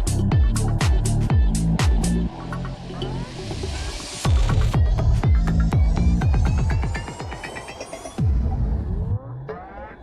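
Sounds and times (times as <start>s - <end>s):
kick drum: 0.0s - 2.2s, 4.2s - 7.5s, 8.2s - 9.2s.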